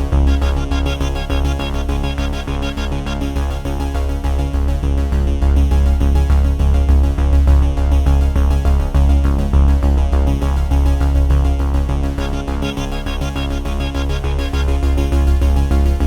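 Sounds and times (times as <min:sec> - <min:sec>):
electronic synthesizer music: 0:00.0 - 0:04.8, 0:10.6 - 0:16.0.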